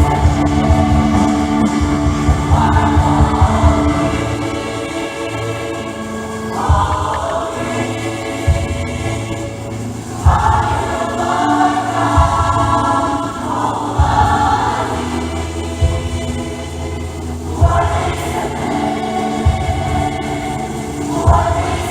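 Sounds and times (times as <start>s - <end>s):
band accompaniment: 0.0s - 14.8s
choir singing: 0.0s - 21.9s
low beats: 0.0s - 21.9s.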